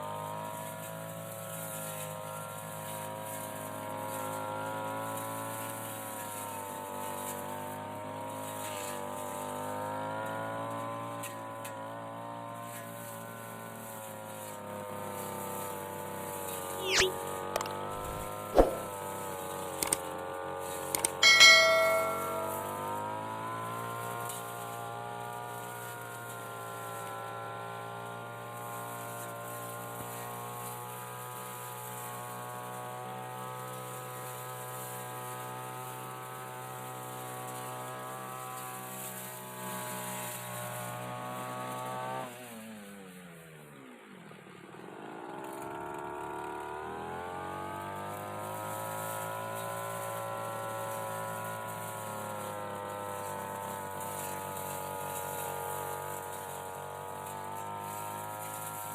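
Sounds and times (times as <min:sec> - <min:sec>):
brush cutter engine revving: 0:45.0 - 0:58.9.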